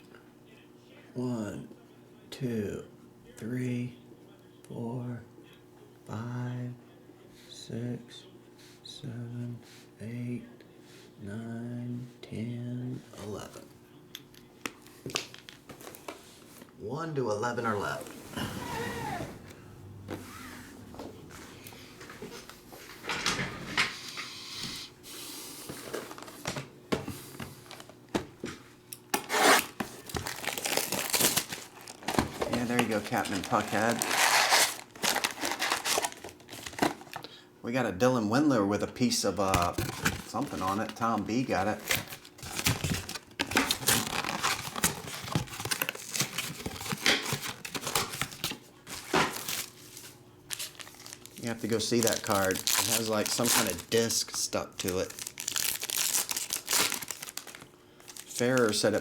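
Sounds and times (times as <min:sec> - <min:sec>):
foil wrapper rustle: 0:29.5 - 0:37.2, 0:39.6 - 0:59.0.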